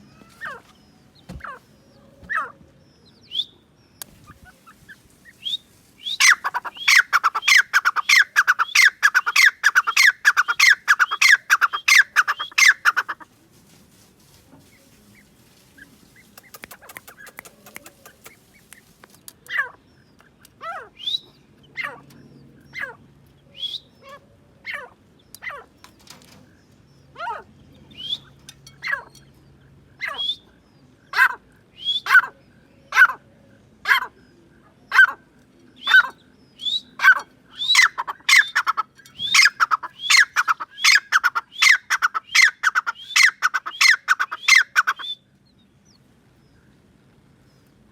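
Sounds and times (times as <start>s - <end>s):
francolin calling: 3.1s - 13.2s, 33.9s - 45.3s.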